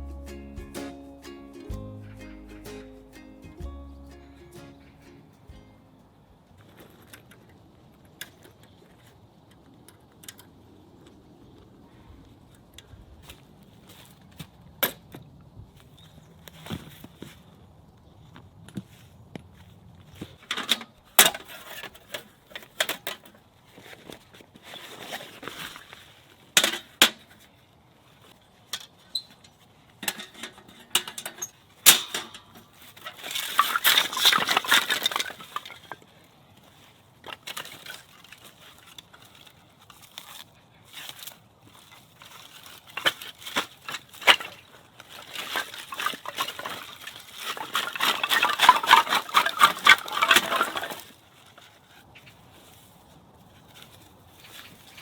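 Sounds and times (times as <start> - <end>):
rustling and scraping: 4.5 - 10.5, 12.9 - 15.2, 15.8 - 17.6, 18.2 - 55.0
small hard objects clinking: 33.0 - 36.1, 42.3 - 51.2.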